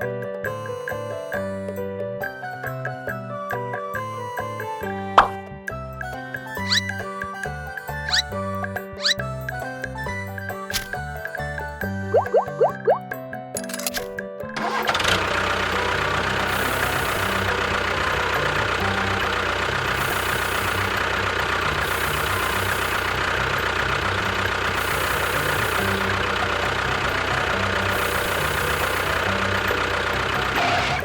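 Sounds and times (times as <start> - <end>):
engine idling: 13.6 - 31.0.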